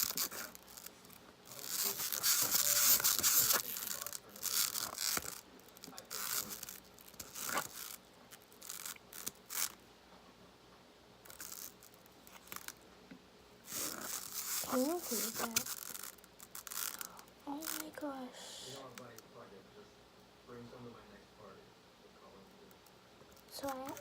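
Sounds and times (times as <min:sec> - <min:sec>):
slime scraping in plastic bowl: 0:13.7 - 0:15.9.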